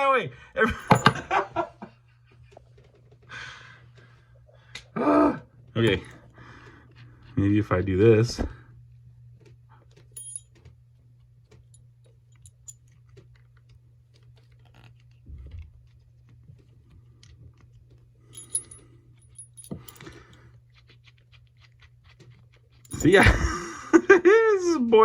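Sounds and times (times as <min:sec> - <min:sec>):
low steady hum: 0:00.0 - 0:25.0
metal puzzle clicking and clinking: 0:22.9 - 0:23.3.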